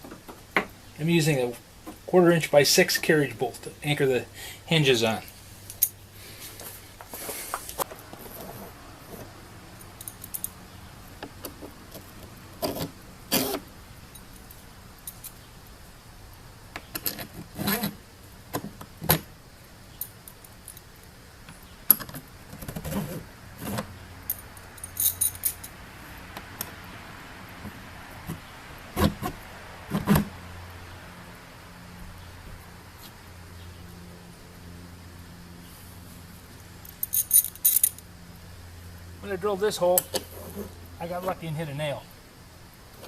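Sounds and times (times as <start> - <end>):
metal bolts clinking: 24.3 - 25.8.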